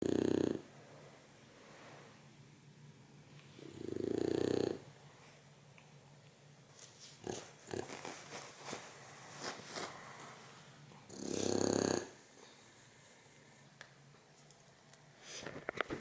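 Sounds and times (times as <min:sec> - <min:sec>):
dog snoring: 0:00.0 - 0:00.7, 0:03.6 - 0:04.9, 0:07.2 - 0:08.2, 0:11.1 - 0:12.2
soft rustles and clicks: 0:05.7 - 0:10.8, 0:13.4 - 0:16.0.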